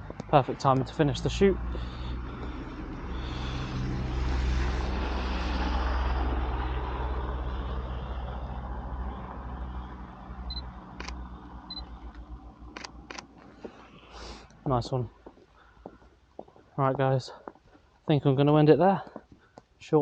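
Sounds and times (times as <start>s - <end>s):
vehicle driving past: 0.2s - 14.8s
sharp clicks: 10.5s - 13.5s.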